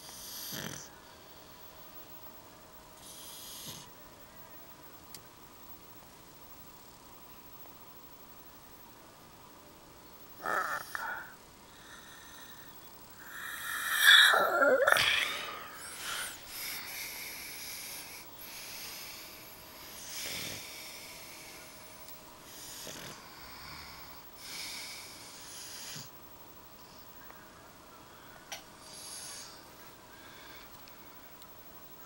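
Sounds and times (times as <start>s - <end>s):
dog and man snoring: 0.0s - 0.9s, 3.0s - 3.9s, 10.4s - 12.5s, 20.0s - 21.7s, 22.5s - 26.1s.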